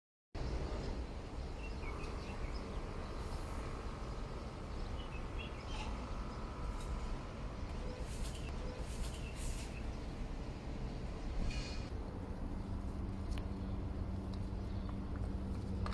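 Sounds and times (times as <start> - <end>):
faint bird chirps: 5.0 - 6.4.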